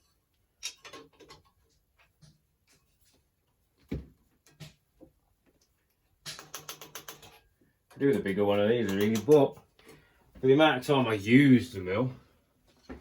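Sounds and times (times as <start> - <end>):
metal tools clicking and knocking: 0.0 - 1.6, 6.2 - 9.6.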